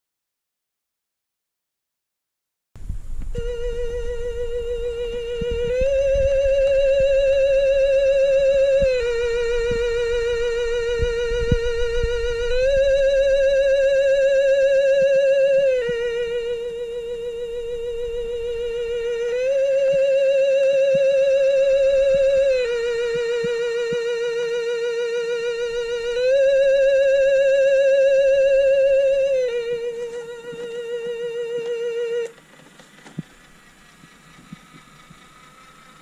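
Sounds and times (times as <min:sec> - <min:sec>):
low rumble: 0:02.8 - 0:31.3
eerie wavering tone: 0:03.4 - 0:32.4.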